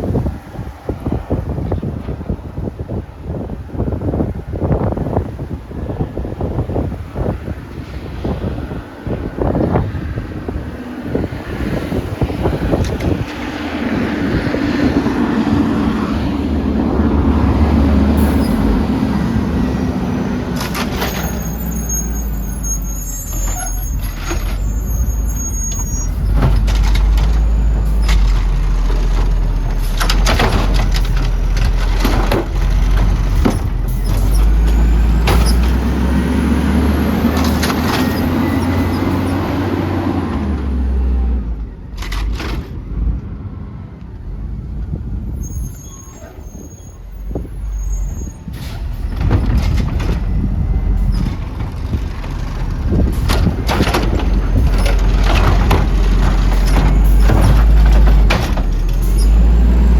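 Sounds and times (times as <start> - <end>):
garbage truck engine drone: 9.5 - 45.6, 46.4 - 59.9.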